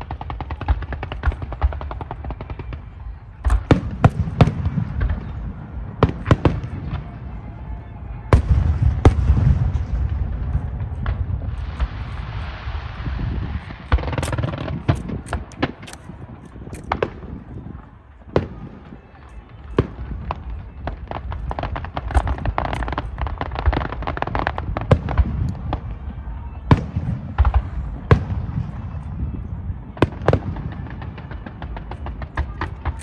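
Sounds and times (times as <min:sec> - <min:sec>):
fireworks bangs and booms: 0:00.0 - 0:33.0
fireworks crackling: 0:00.0 - 0:33.0.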